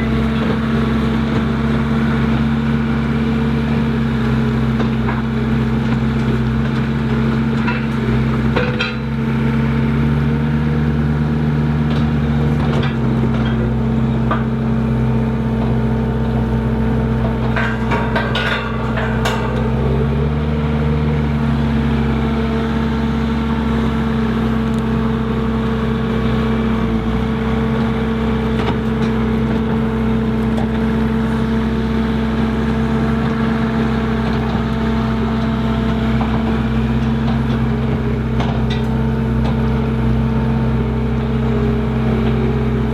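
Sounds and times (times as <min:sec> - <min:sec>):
skid steer engine running: 0:00.0 - 0:42.9
bucket clanking and rattling: 0:17.3 - 0:19.8.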